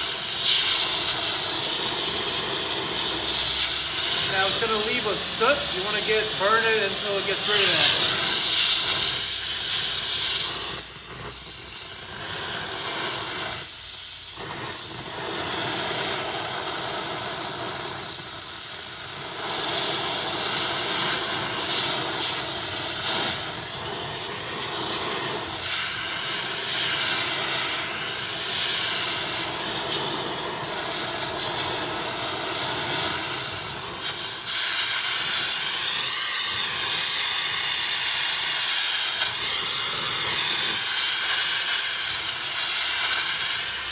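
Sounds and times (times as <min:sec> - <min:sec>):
torch flame hissing: 0:00.0 - 0:43.9.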